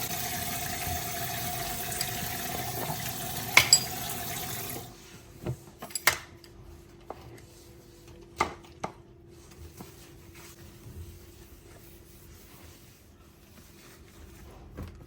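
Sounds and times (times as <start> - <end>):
running tap water: 0.0 - 5.0
dishes and utensils clinking: 1.9 - 4.5.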